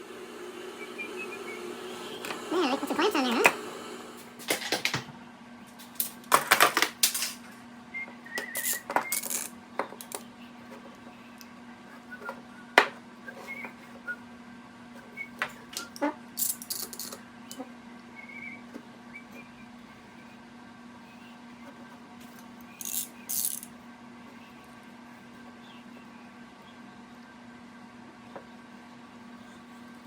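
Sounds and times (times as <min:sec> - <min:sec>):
small metal pieces clinking: 0:08.6 - 0:09.5, 0:16.4 - 0:17.2, 0:22.8 - 0:23.7.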